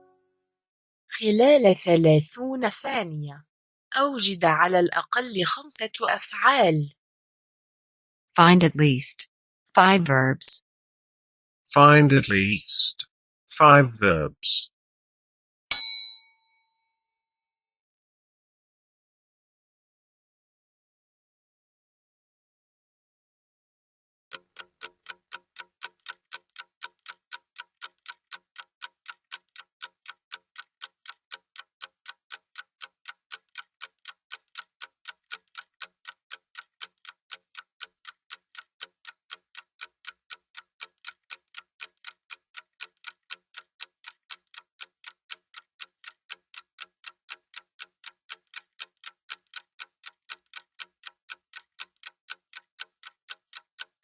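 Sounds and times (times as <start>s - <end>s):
clock ticking: 24.3s - 54.0s.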